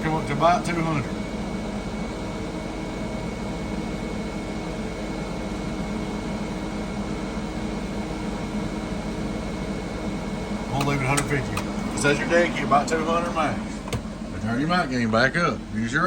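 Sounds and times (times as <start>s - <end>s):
cooling fans whirring: 0.0s - 16.0s
electrical hum: 0.0s - 16.0s.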